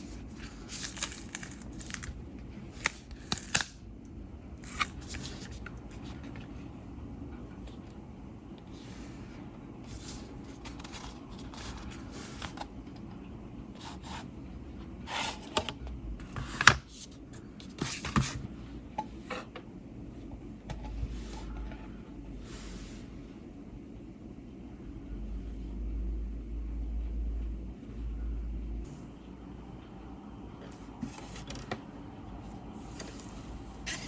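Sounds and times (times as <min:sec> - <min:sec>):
hands rubbing packaging: 0:00.0 - 0:02.2.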